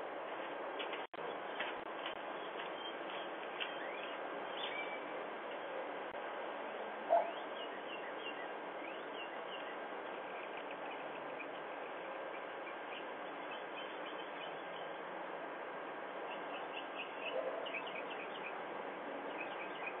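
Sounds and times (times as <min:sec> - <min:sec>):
small birds chirping: 0:01.2 - 0:05.8, 0:07.1 - 0:15.2, 0:16.1 - 0:20.0.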